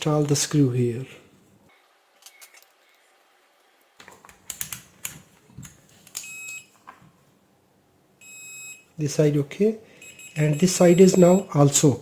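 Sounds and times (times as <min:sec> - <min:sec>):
multimeter continuity beeps: 0:06.2 - 0:06.8, 0:08.2 - 0:08.9, 0:10.0 - 0:11.6.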